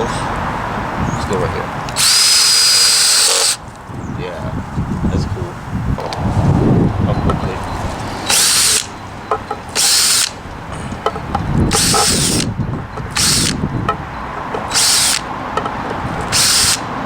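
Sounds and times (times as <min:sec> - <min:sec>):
cordless drill driving screw into wood: 0:01.9 - 0:03.6, 0:08.3 - 0:09.0, 0:09.7 - 0:10.4, 0:11.7 - 0:12.5, 0:13.1 - 0:13.6, 0:14.6 - 0:15.3, 0:16.2 - 0:16.9.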